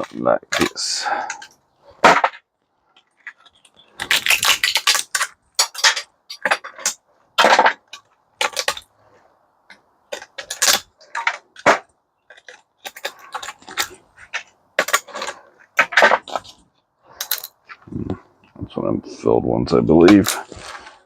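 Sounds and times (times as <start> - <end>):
metal parts clicking and clinking: 17.2 - 17.6.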